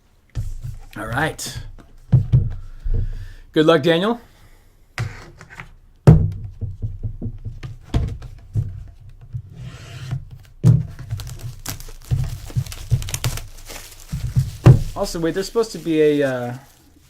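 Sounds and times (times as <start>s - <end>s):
cardboard box thunks and rubbing: 0.4s - 3.2s, 10.1s - 15.7s
crinkly rustle: 11.0s - 17.0s.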